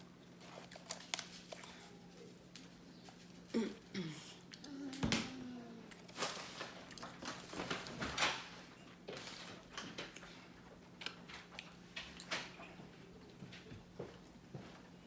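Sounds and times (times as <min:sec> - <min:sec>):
faint steady hum: 0:00.0 - 0:15.0
wet chewing and mouth clicks: 0:00.3 - 0:03.3.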